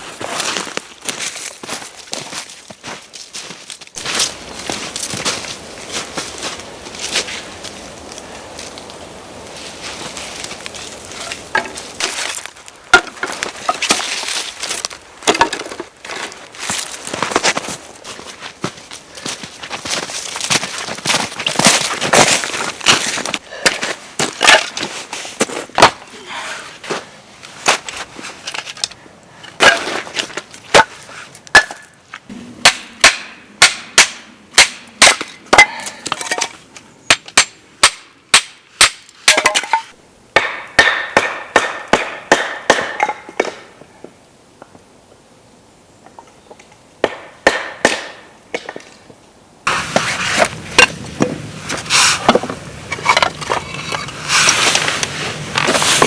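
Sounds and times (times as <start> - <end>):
firewood being chopped: 10.1 - 17.6, 19.8 - 26.0, 30.7 - 36.5, 37.1 - 43.7, 47.0 - 48.9.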